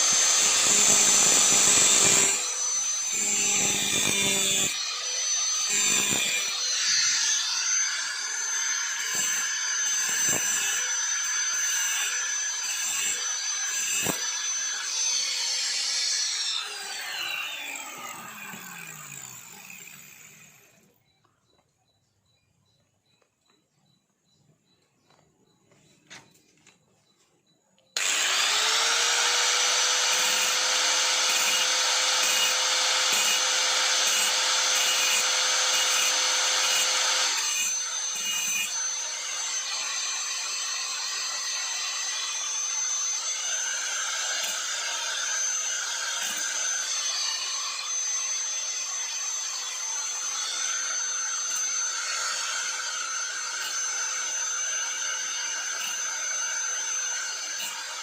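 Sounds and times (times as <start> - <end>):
tool grinding metal: 0.0 - 20.8, 28.0 - 58.0
power tool motor whine: 0.0 - 20.9, 28.0 - 58.0.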